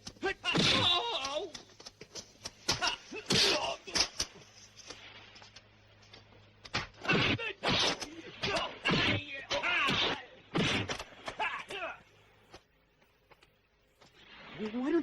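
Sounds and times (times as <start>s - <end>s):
fighters shouting and grunting: 0.2s - 1.6s, 2.7s - 4.2s, 7.0s - 12.1s
punch and kick impacts: 6.7s - 11.6s.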